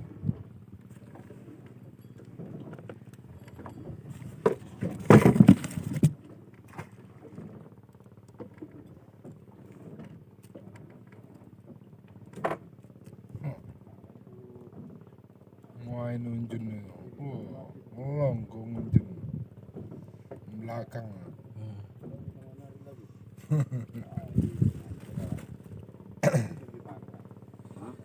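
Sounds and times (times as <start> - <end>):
boat engine running: 0.0 - 28.0
knocks and clatter on deck: 4.4 - 6.2, 12.3 - 12.7.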